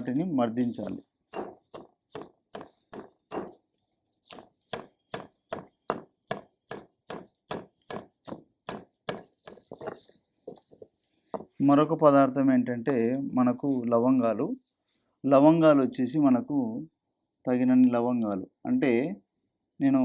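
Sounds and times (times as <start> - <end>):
pestle knocking in stone mortar: 0.7 - 10.6.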